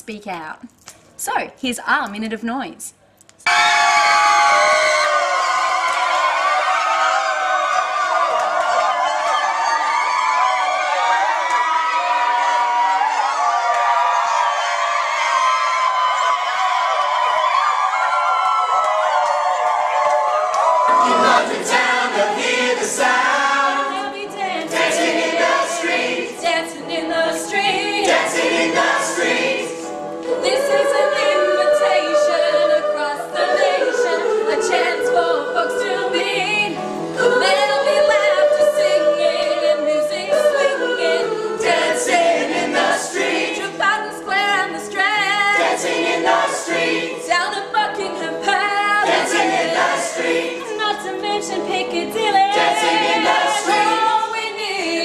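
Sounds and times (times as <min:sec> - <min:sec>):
group singing in chorus: 0:18.4 - 0:55.0.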